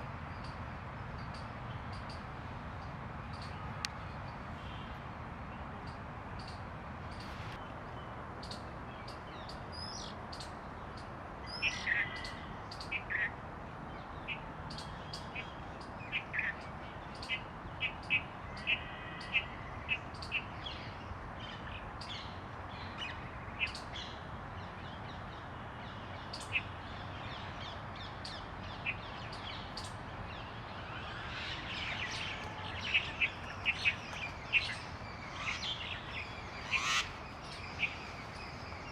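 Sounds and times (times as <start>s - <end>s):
background hiss: 6.4s - 7.6s
bird whistles and chirps: 31.6s - 38.0s.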